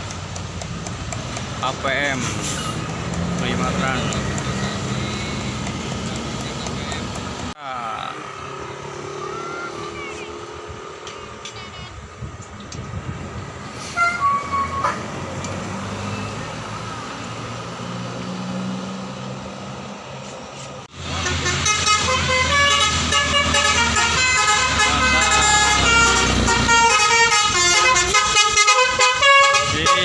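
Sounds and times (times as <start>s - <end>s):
bus engine running: 0.0s - 30.0s
musical air horn playing a tune: 13.8s - 15.1s, 21.1s - 30.0s
short horn notes: 21.1s - 30.0s.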